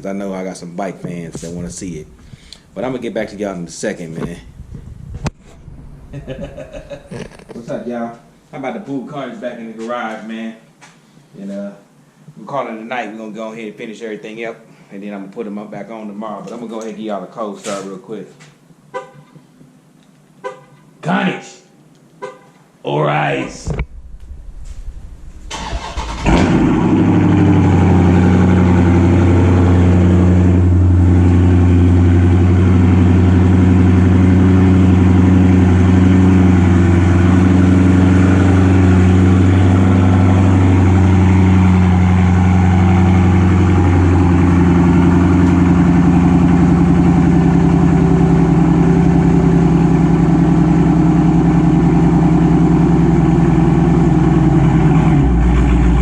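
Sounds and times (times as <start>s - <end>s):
car starter cranking: 25.5s - 27.1s
car engine fast idle: 25.5s - 29.4s.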